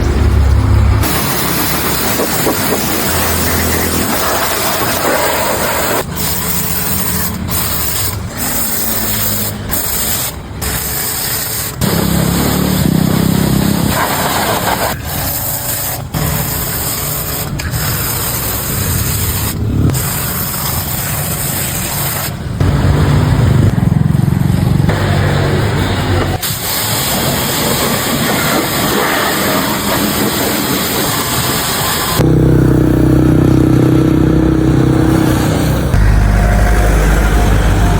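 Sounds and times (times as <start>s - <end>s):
pressure washer motor hum: 0.0s - 32.7s
water spraying hiss: 1.0s - 22.8s, 25.0s - 32.2s.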